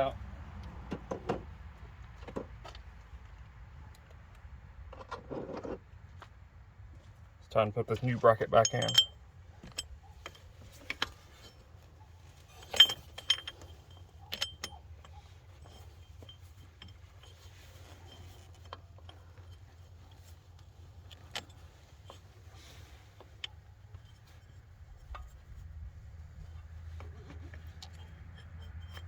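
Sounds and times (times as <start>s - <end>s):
metal clinks and taps: 7.9s - 25.4s, 26.4s - 29.0s.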